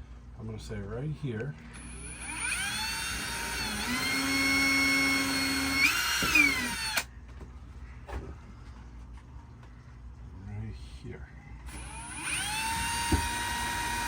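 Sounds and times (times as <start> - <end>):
power drill whining: 1.7 - 7.1, 11.7 - 14.0.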